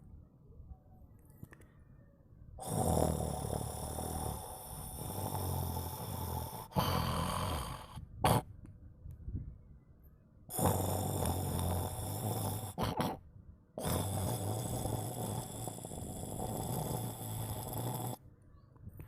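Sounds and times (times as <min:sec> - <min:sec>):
cat snoring: 0:02.6 - 0:08.4, 0:10.5 - 0:13.2, 0:13.8 - 0:18.2.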